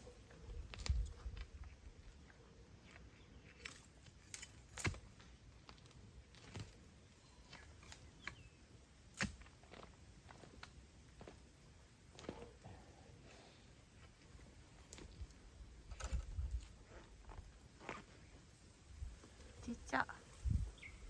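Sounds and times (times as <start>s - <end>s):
faint snaps and rustles: 0.6s - 6.9s, 9.1s - 11.4s, 14.0s - 18.2s.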